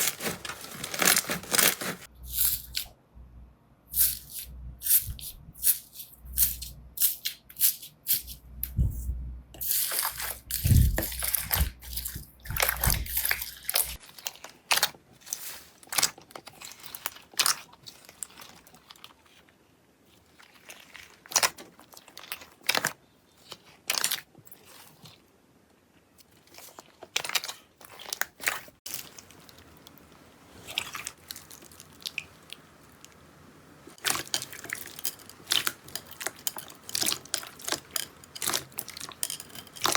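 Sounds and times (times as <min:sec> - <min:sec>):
slime squishing and crackling: 0:09.6 - 0:19.4.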